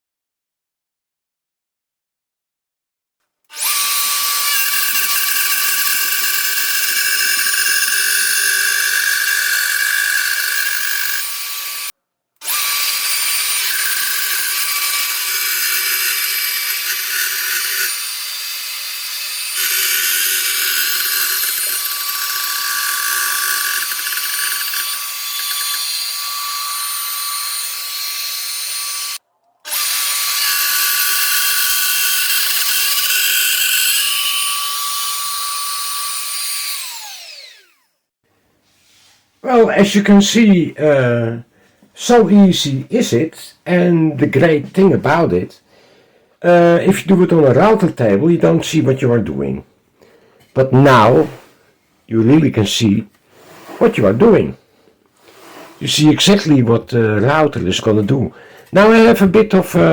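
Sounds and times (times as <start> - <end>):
electric router cutting: 3.5 - 37.9.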